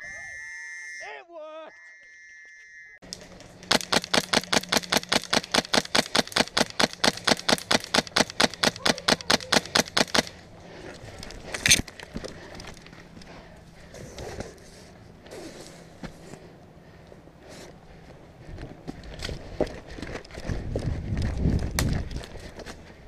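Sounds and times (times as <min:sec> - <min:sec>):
airsoft gun firing: 0:03.7 - 0:10.4.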